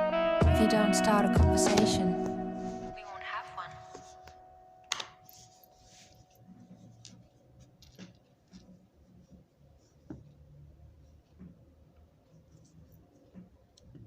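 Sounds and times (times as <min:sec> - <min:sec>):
background music: 0:00.0 - 0:06.4.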